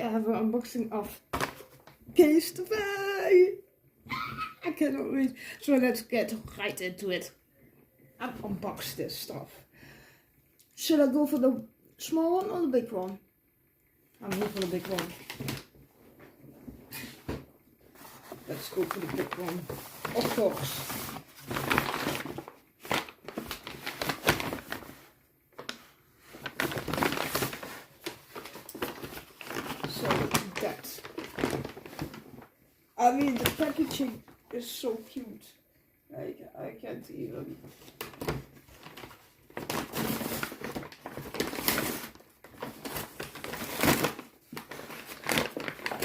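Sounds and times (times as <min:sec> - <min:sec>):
packaging rustling and crinkling: 0:01.3 - 0:02.0, 0:14.2 - 0:15.8, 0:17.0 - 0:34.7, 0:37.6 - 0:46.0.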